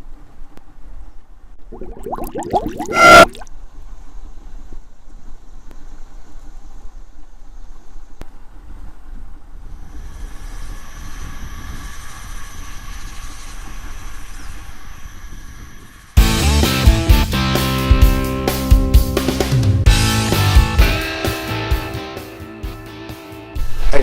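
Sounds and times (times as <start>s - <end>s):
water noise: 1.6s - 3.5s
high-pitched whine: 1.8s - 3.4s.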